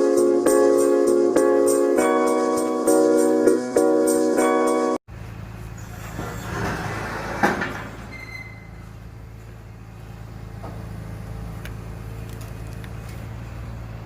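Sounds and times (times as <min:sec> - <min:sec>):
garbage truck engine running: 0:05.1 - 0:14.0.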